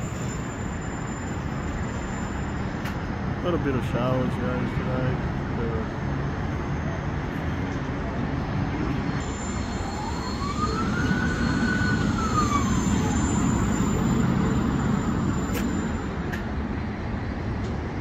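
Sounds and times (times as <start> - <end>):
city traffic rumble: 0.0 - 18.0
distant siren wailing: 9.1 - 16.4.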